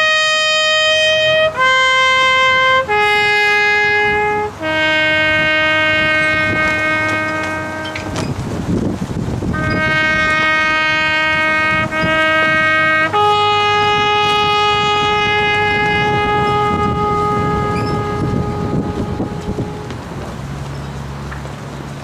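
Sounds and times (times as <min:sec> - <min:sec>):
higher-pitched horn: 0:00.0 - 0:08.4, 0:09.5 - 0:20.6
boat horn blasts: 0:00.0 - 0:21.2.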